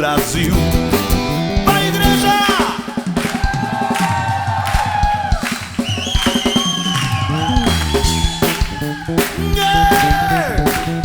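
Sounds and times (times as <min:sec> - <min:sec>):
bass: 0:00.0 - 0:02.7, 0:05.9 - 0:11.0
drum kit: 0:00.0 - 0:11.0.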